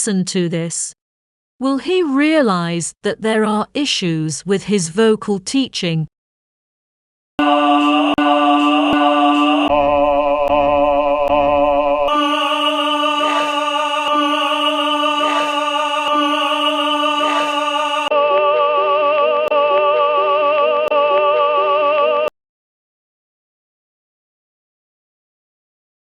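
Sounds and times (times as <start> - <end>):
musical accompaniment: 7.4 - 22.3
operatic tenor singing: 7.4 - 22.3.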